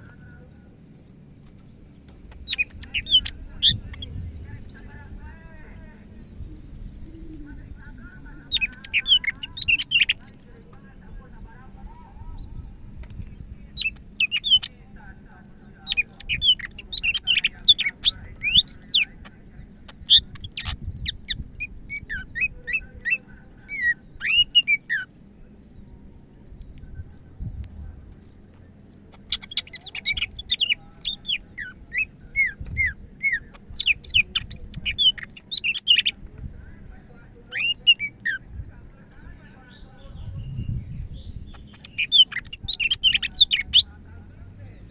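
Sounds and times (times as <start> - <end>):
bird singing chirps and whistles: 2.4 - 4.8, 6.1 - 10.6, 13.8 - 14.7, 15.8 - 19.3, 19.9 - 27.2, 29.1 - 38.4, 39.6 - 44.5.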